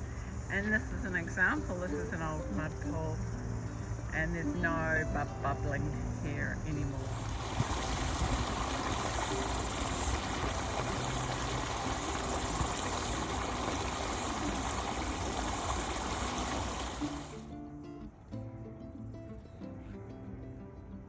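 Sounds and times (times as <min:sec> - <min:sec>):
rushing hissing water: 0:00.0 - 0:05.2, 0:06.9 - 0:17.5.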